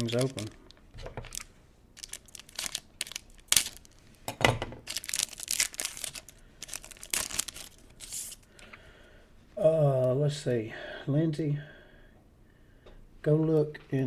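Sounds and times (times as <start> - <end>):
plastic wrappers crinkling and tearing: 0.0 - 4.2, 4.8 - 8.6.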